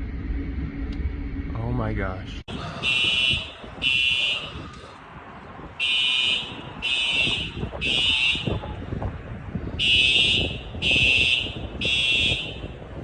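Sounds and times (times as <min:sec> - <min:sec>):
low rumble: 0:00.0 - 0:05.8
electronic alarm beeping: 0:02.8 - 0:04.5.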